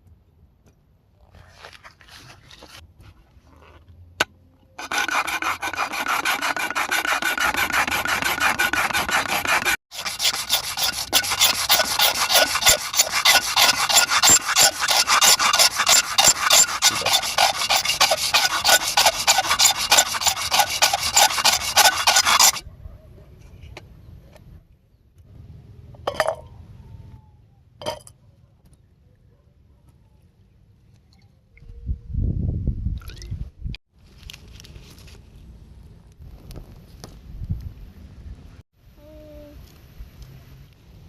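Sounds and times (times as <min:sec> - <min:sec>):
file scraping hard surface: 0:04.8 - 0:22.6.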